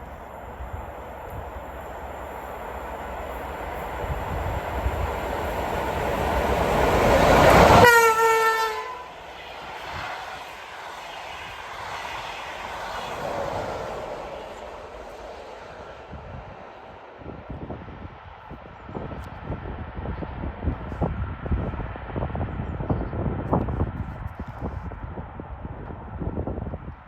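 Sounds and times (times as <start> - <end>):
train running on rails: 0.0 - 27.0
train horn blast: 7.5 - 9.2.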